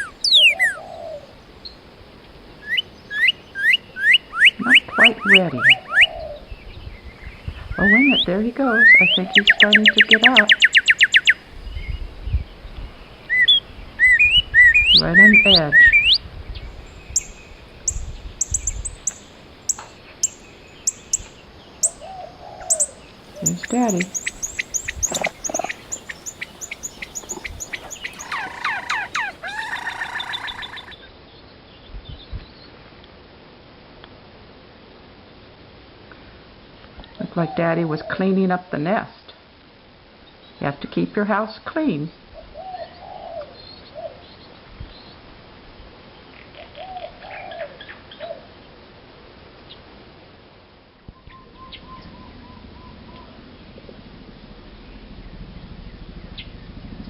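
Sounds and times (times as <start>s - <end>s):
low rising and falling bird notes: 0.0s - 1.3s, 2.6s - 12.0s, 12.8s - 31.0s, 51.2s - 57.0s
songbirds calling: 0.0s - 32.7s, 42.4s - 45.3s, 51.1s - 53.7s
quick run of even bird notes: 13.3s - 31.0s
sharp high bird chips: 17.2s - 31.0s.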